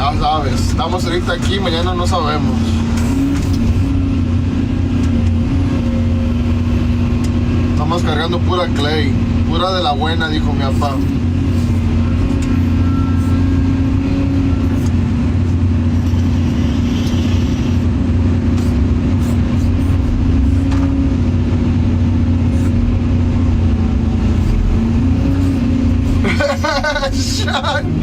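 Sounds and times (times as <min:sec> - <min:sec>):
diesel excavator engine drone: 0:00.0 - 0:28.0.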